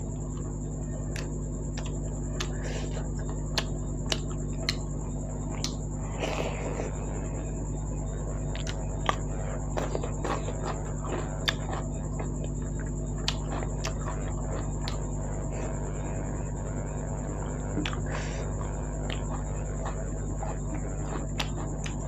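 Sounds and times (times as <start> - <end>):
steady electrical hum: 0.0 - 22.0
chewing and wet mouth clicks: 1.1 - 6.5, 8.4 - 15.1, 19.0 - 22.0.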